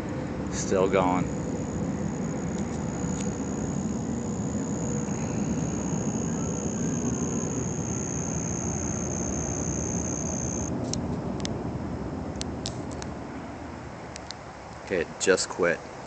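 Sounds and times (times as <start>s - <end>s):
high-pitched whine: 0.0s - 10.7s
deep roar from the sky: 0.2s - 12.6s.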